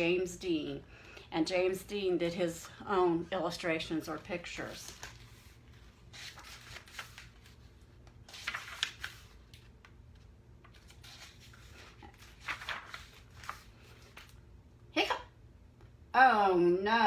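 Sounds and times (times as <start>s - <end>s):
paper pages rustling: 3.9s - 14.4s.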